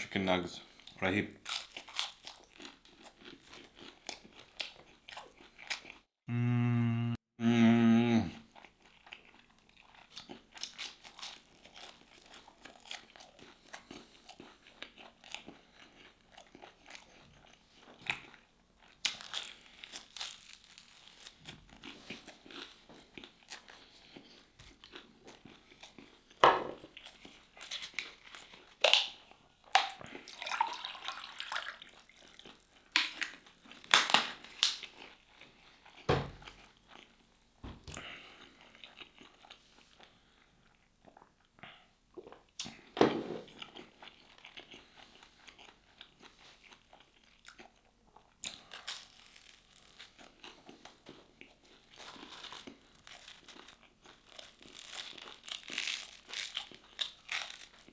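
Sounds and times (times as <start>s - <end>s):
person chewing crispy food: 0.6s - 6.1s, 8.3s - 57.9s.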